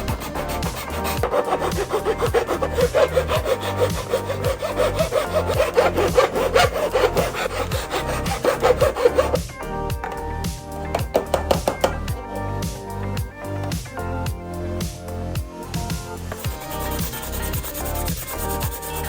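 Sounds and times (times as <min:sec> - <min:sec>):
hand tool rasping: 0:00.0 - 0:09.4
background music with steady beat: 0:00.0 - 0:19.0.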